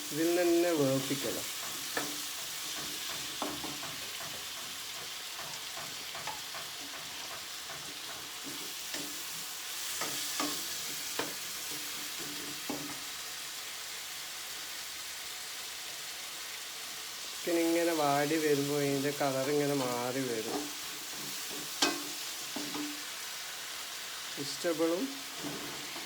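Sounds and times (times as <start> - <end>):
chicken sizzling in oil: 0.0 - 26.0
spoon scraping and clinking on pan: 1.6 - 9.2, 20.4 - 23.0.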